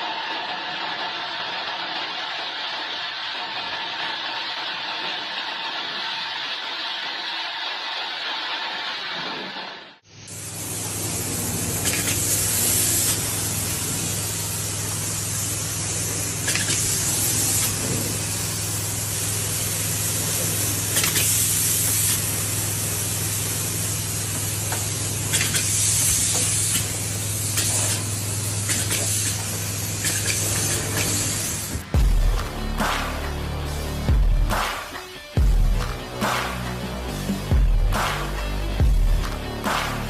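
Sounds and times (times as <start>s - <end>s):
loud hissing spray: 0.0s - 32.0s.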